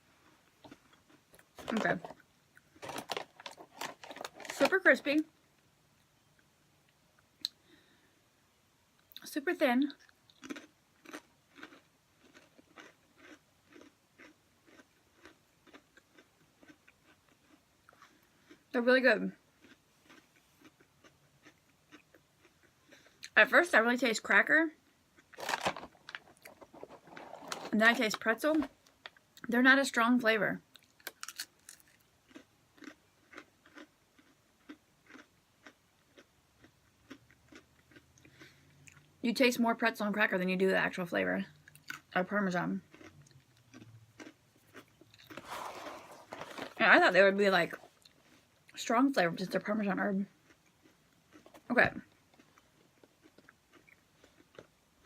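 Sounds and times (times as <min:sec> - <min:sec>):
crisp cracker being chewed: 0:00.6 - 0:04.8, 0:10.0 - 0:18.6, 0:19.6 - 0:23.4, 0:25.2 - 0:29.5, 0:30.7 - 0:39.1, 0:42.9 - 0:46.8, 0:50.4 - 0:54.8.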